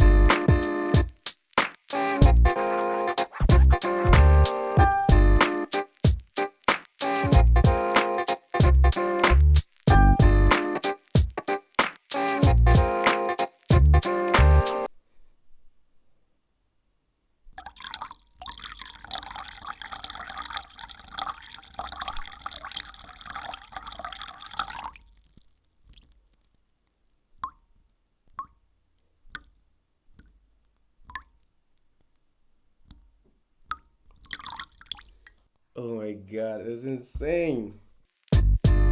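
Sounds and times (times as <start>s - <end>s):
water running in a stream: 17.7s - 26.3s
water drops plopping: 33.7s - 35.4s.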